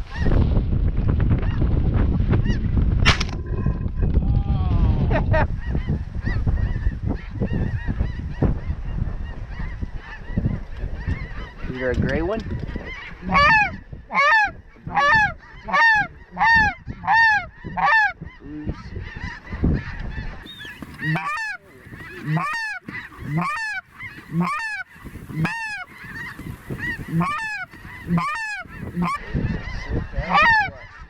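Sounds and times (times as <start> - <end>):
snow goose honking: 12.9 - 30.9.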